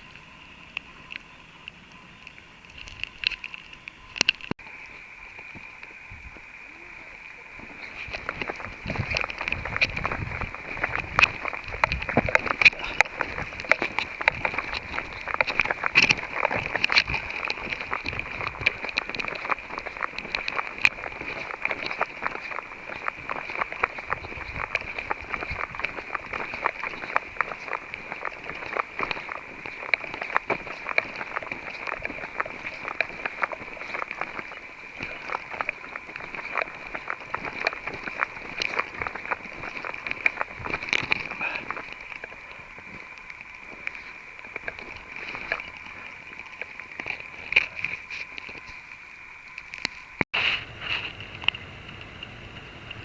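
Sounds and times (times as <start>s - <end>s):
steady high hum: 0.0s - 53.0s
steady hiss: 0.0s - 53.0s
footsteps on mountain trail: 7.6s - 48.9s.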